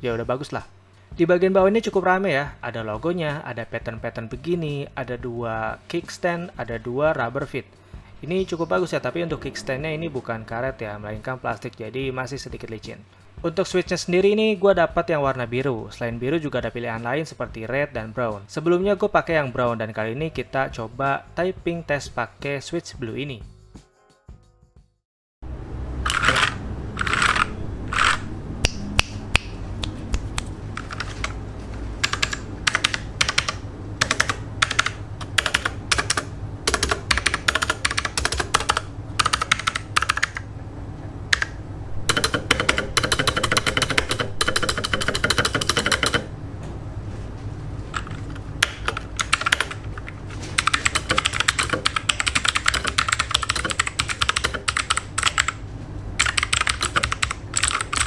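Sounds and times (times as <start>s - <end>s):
clicky mechanical keyboard typing: 26.1s - 28.2s, 30.8s - 31.4s, 32.0s - 40.5s, 41.3s - 46.3s, 48.0s - 55.6s, 56.2s - 58.0s.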